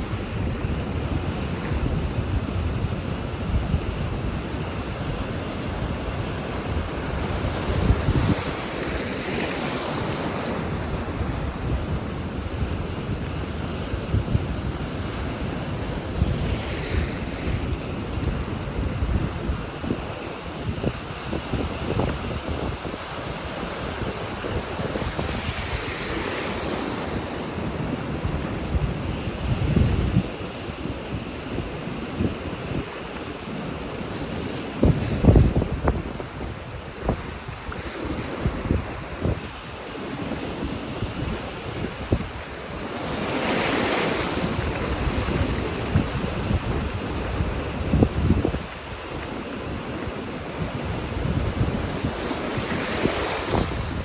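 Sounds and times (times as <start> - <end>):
wind buffeting microphone: 0.0 - 54.0
ocean surf breaking: 14.7 - 54.0.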